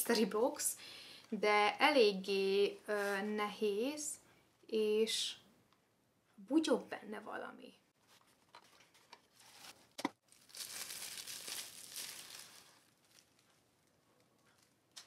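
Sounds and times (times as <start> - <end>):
packaging crinkling: 9.4 - 15.0.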